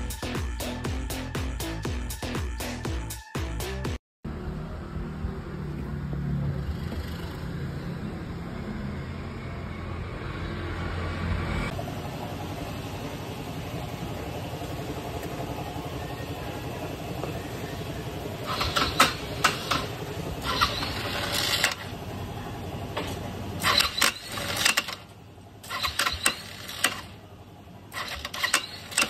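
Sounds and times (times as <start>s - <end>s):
road traffic noise: 4.2s - 29.0s
vehicle engine: 4.2s - 29.0s.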